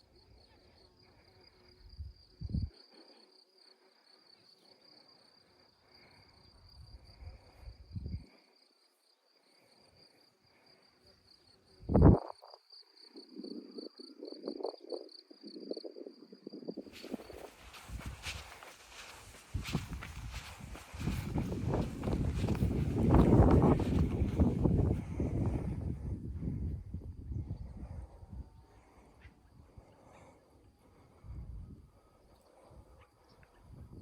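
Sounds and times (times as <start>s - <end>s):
insects chirping: 0.0s - 34.0s
rustling: 16.9s - 24.6s.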